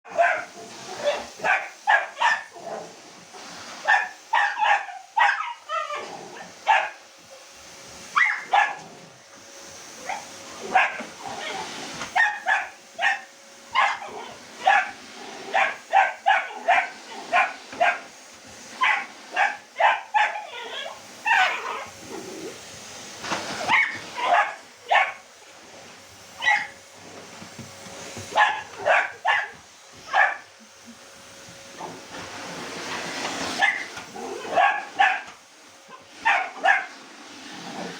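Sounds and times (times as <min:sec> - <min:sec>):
dog barking: 0:00.1 - 0:02.5, 0:03.8 - 0:06.1, 0:06.7 - 0:07.0, 0:08.2 - 0:08.8, 0:10.1 - 0:11.5, 0:12.2 - 0:18.1, 0:18.8 - 0:21.9, 0:23.7 - 0:25.2, 0:26.4 - 0:26.8, 0:28.3 - 0:30.5, 0:33.6 - 0:35.3, 0:36.2 - 0:36.9.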